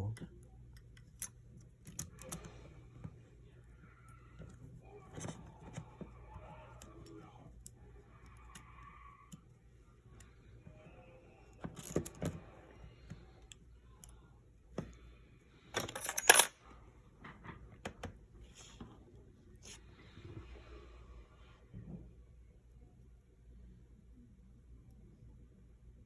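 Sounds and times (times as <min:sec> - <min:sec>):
small metal parts clinking: 0:15.7 - 0:16.6
metal jangling clatter: 0:15.8 - 0:16.5.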